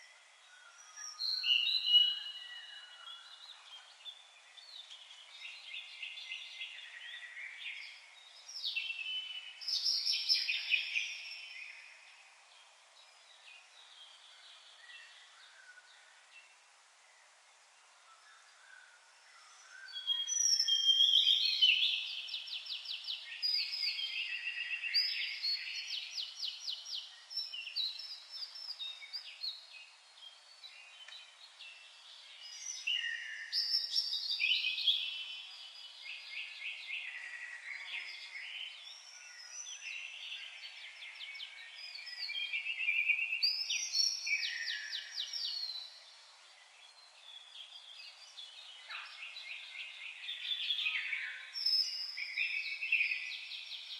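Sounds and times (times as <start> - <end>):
birds singing in chorus: 0.0 - 53.9.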